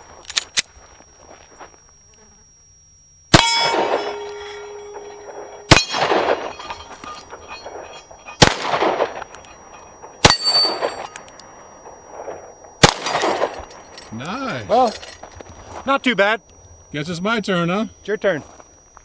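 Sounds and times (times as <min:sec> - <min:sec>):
handgun shots: 0:03.3 - 0:06.6, 0:08.4 - 0:09.3, 0:12.8 - 0:13.6
steel plate ringing: 0:03.3 - 0:11.3.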